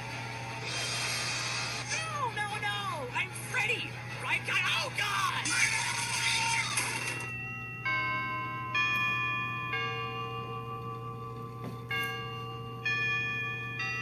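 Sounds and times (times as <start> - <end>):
clock chime bell notes: 6.7 - 14.0.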